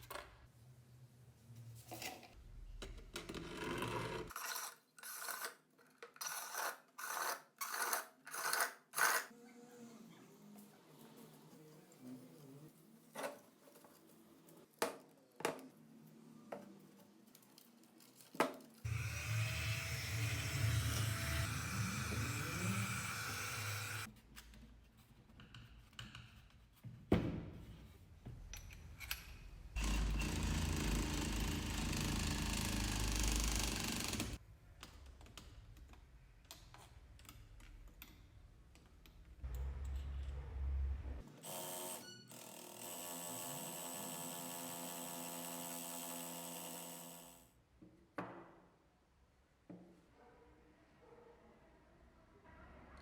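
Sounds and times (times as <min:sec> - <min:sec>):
small power tool running: 0:18.9 - 0:24.1, 0:29.8 - 0:34.4, 0:41.4 - 0:47.5.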